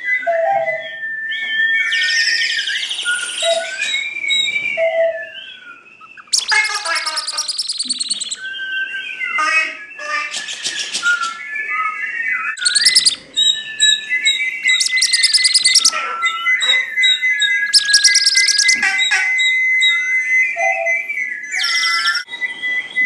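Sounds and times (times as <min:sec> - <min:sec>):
sliding whistled notes: 0:00.0 - 0:23.0
bird-like trills: 0:05.5 - 0:08.5, 0:12.6 - 0:21.0.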